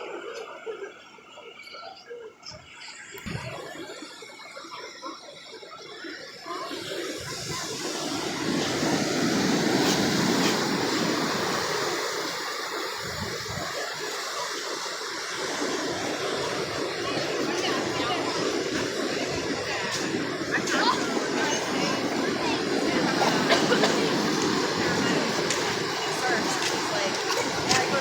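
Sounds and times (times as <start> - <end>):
ocean surf wave washing: 6.7 - 28.0.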